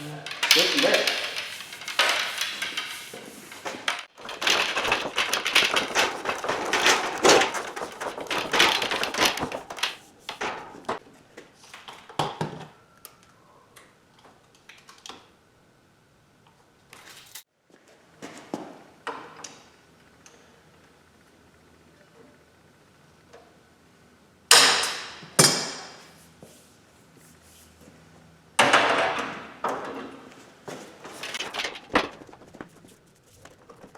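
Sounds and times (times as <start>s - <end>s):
tubing scraping and clattering: 0.0s - 11.0s, 30.7s - 33.9s.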